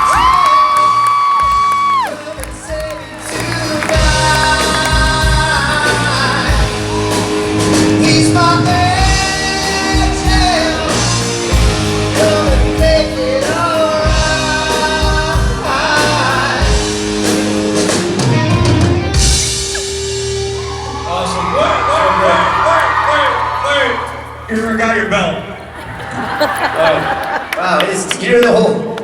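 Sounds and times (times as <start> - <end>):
rock song with singer and drums: 0.0 - 21.1.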